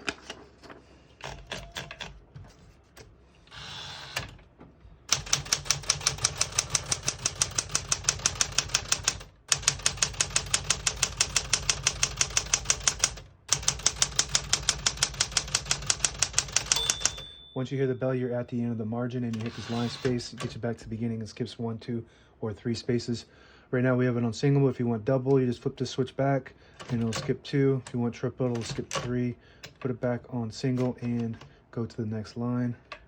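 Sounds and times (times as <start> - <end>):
manual typewriter typing: 1.2 - 2.2, 3.5 - 4.4, 5.1 - 17.4, 19.3 - 20.6, 26.8 - 29.9, 30.7 - 31.5
short rasp: 19.4 - 20.2.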